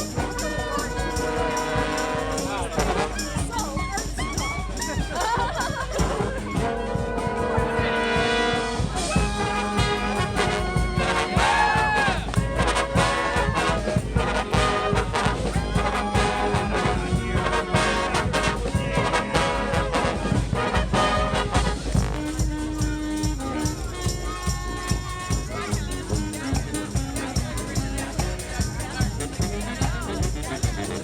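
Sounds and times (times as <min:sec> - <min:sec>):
brass band horns: 0:00.0 - 0:31.0
steady drum beat: 0:00.0 - 0:31.0
horn bending in pitch: 0:06.2 - 0:25.3.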